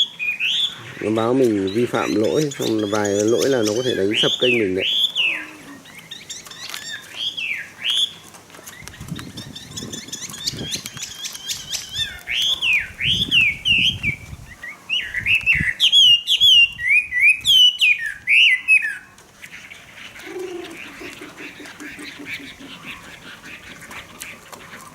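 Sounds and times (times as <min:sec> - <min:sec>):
bird singing whistled phrases: 0:00.0 - 0:08.2, 0:08.8 - 0:19.1.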